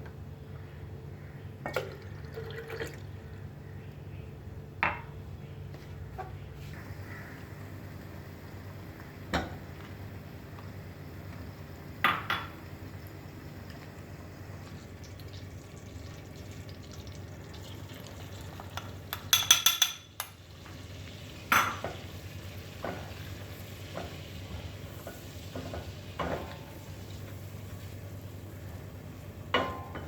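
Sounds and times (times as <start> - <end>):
food sizzling in a pan: 20.4 - 29.3.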